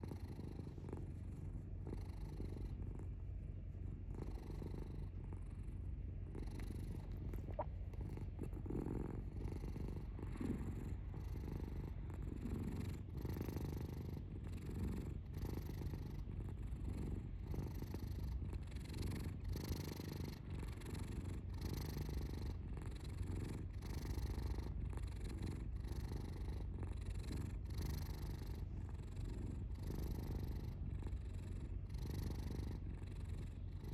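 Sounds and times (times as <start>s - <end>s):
cat purring: 0.0s - 33.9s.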